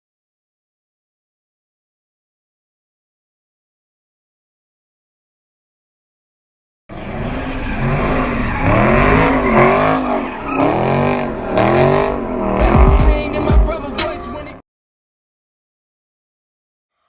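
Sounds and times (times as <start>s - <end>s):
car engine revving: 6.9s - 14.6s.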